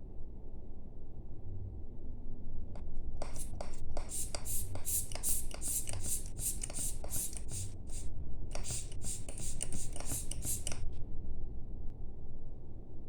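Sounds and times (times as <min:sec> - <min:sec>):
air blower puffs: 0:03.2 - 0:10.8.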